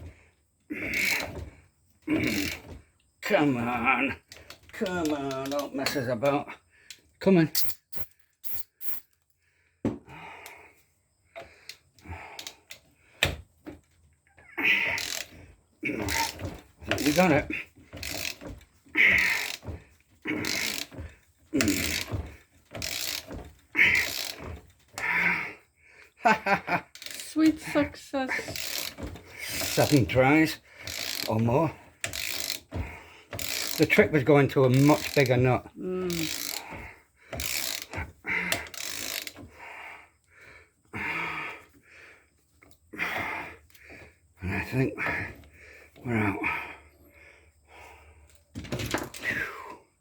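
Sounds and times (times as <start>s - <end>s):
ratchet wrench clicking: 4.4s - 6.0s, 6.9s - 9.2s, 14.8s - 15.4s, 16.0s - 17.4s, 18.0s - 19.7s, 20.4s - 20.9s, 21.6s - 22.2s, 22.8s - 24.5s, 26.9s - 27.4s, 28.5s - 30.1s, 30.8s - 32.7s, 33.3s - 34.0s, 34.7s - 35.3s, 36.0s - 36.8s, 37.4s - 39.4s.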